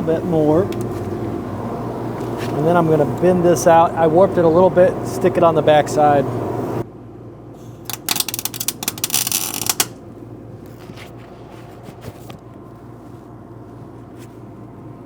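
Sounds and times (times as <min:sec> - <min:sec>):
low steady hum: 0:00.0 - 0:15.0
welder crackle: 0:07.8 - 0:10.0.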